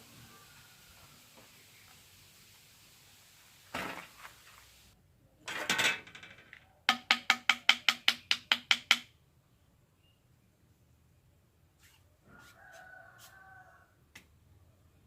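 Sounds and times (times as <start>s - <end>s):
sharp hollow knocks: 6.9s - 9.1s.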